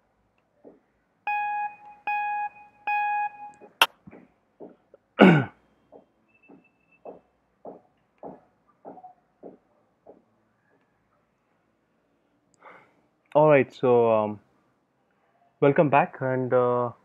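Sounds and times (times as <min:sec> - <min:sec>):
steady beeping tones: 0:01.3 - 0:03.9.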